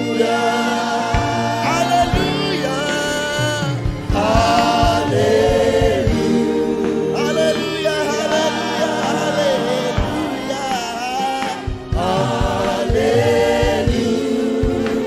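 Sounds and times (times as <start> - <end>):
band accompaniment: 0.0 - 15.0
drum hits: 0.0 - 15.0
gospel choir singing: 0.0 - 15.0.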